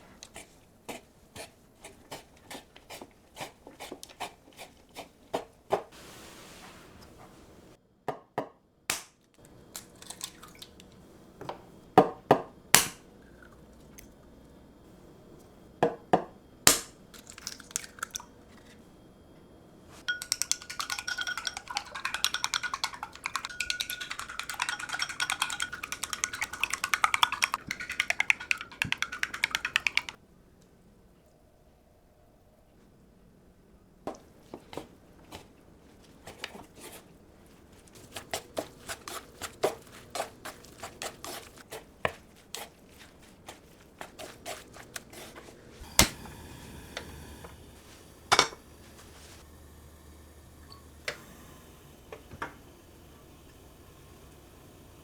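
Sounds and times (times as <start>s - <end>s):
utensils clinking against dishes: 20.0s - 30.2s, 48.3s - 48.6s.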